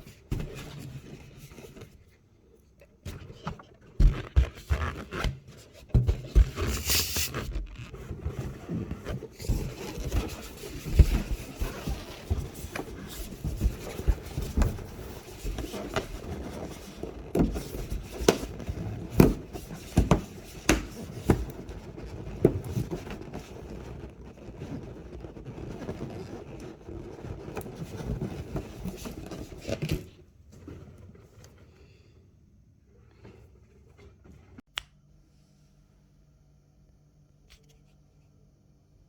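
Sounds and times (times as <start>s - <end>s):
balloons scraping and rubbing: 3.1s - 29.8s
short hiss: 6.8s - 7.4s.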